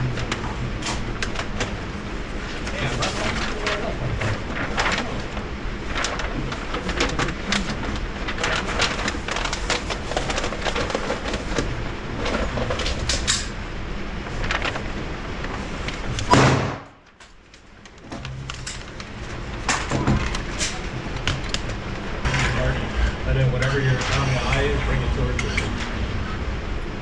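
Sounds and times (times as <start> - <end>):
loud gunshot: 16.3 - 17.0
muffled gunshots: 16.3 - 17.0.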